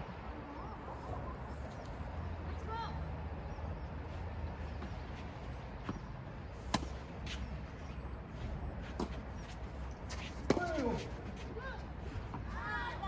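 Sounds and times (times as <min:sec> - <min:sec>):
tennis ball hitting racket: 0:06.6 - 0:07.5, 0:10.1 - 0:11.1.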